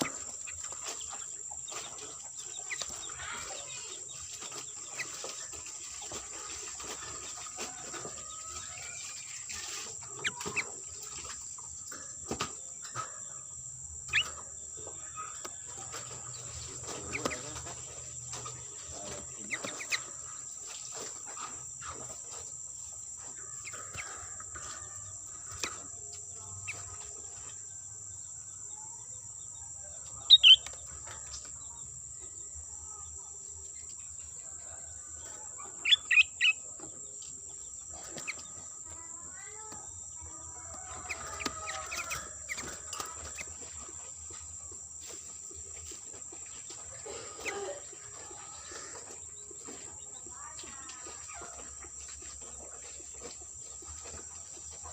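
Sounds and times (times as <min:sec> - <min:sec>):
bird chattering calls: 0:30.2 - 0:30.7
bird calling sharp notes: 0:30.3 - 0:30.6.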